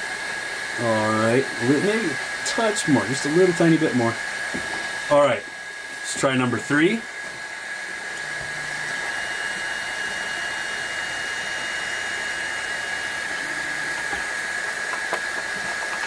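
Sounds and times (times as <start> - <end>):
cooling fans whirring: 0.0 - 16.0
faint high whine: 0.0 - 16.0.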